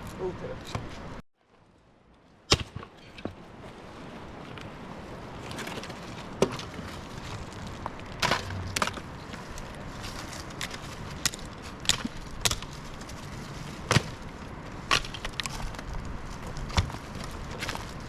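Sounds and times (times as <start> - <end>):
twigs and branches cracking: 4.5 - 18.0.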